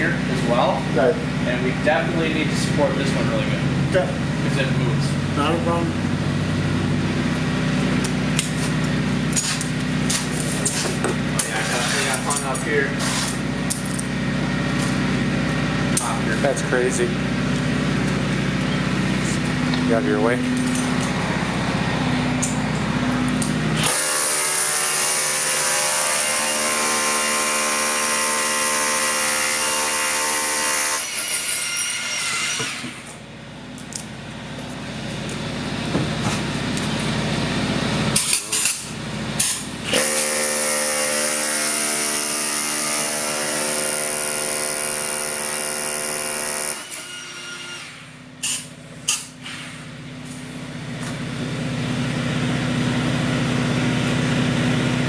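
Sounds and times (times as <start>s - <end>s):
power drill running: 21.1s - 33.1s, 39.5s - 48.3s.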